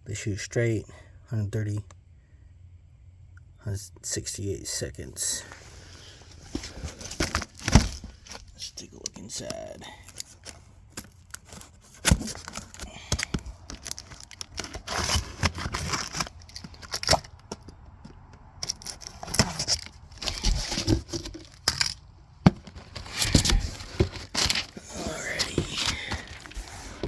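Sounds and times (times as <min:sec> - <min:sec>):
packaging crinkling: 0:06.1 - 0:17.7, 0:18.6 - 0:27.0
tape tearing: 0:06.4 - 0:08.7, 0:09.4 - 0:17.6, 0:18.6 - 0:27.0.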